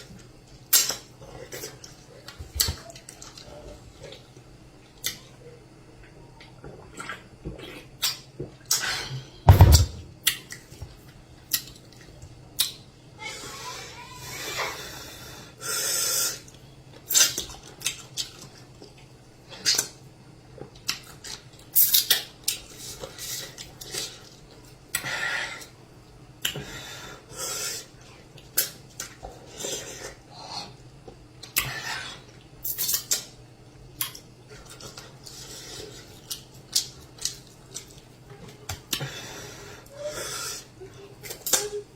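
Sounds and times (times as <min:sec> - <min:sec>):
wet eating sounds: 0:00.0 - 0:09.4, 0:15.8 - 0:25.8, 0:26.4 - 0:41.9.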